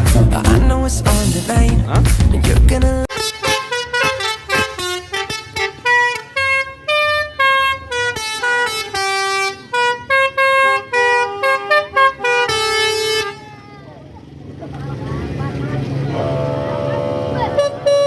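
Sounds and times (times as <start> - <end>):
multi-tone car horn playing a tune: 3.1 - 13.7, 16.1 - 18.0.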